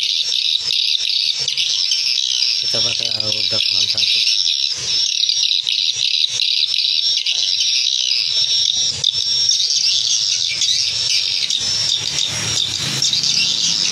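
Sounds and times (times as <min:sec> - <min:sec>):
swiftlets twittering: 0:00.0 - 0:13.9.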